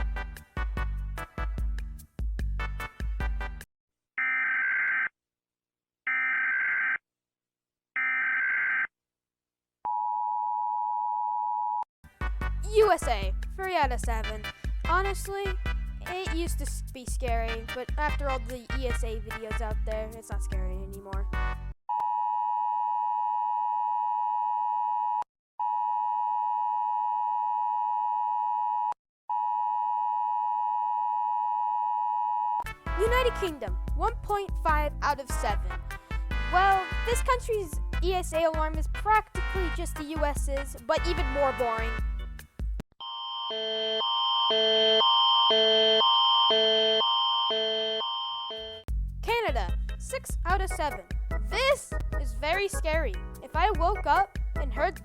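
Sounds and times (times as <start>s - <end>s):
two-tone attention signal: 43.0s - 48.8s.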